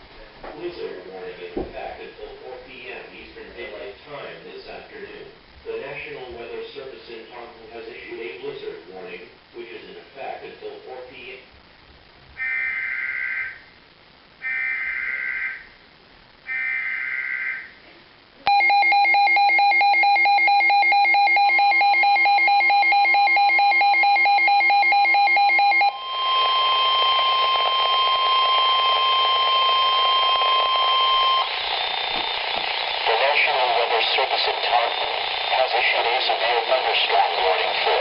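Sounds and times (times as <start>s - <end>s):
static hiss: 0.0s - 18.5s, 25.9s - 38.0s
steady single-pitch alert tone: 18.5s - 33.0s
warbling data tones: 22.8s - 38.0s.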